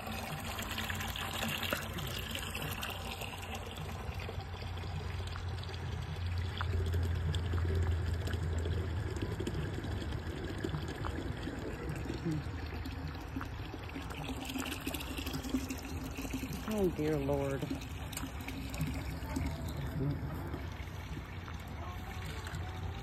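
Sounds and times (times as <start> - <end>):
water pouring into container: 0.0 - 23.0.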